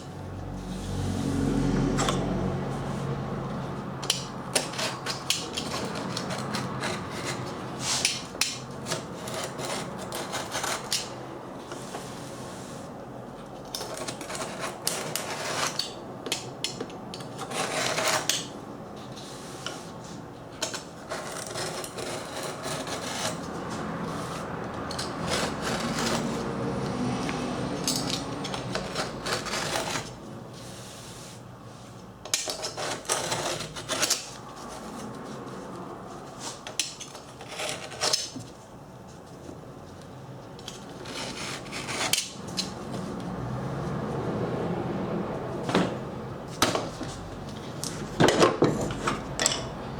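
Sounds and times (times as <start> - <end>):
hand rubbing and scraping on metal: 0.2 - 40.0.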